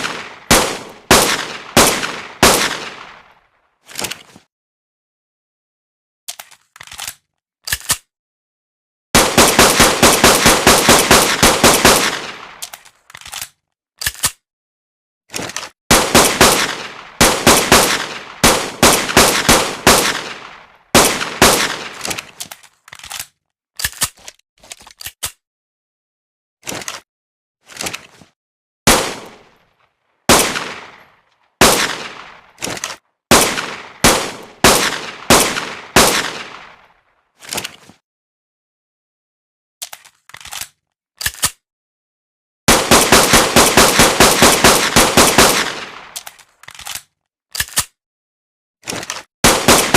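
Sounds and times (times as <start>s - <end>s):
pistol gunshots: 0.0s - 3.3s, 9.2s - 12.6s, 15.9s - 22.3s, 28.9s - 29.5s, 30.3s - 36.9s, 42.7s - 46.2s, 49.4s - 49.9s.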